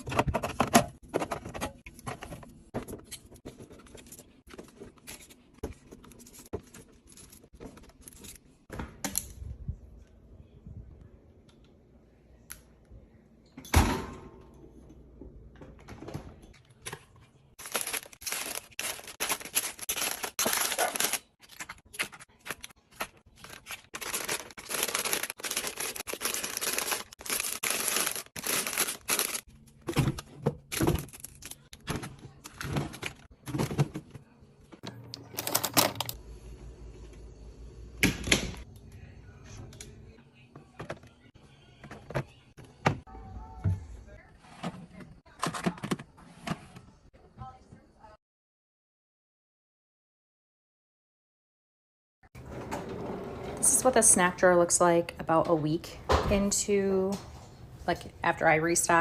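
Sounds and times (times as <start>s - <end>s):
plastic wrappers rustling: 17.6s - 29.5s.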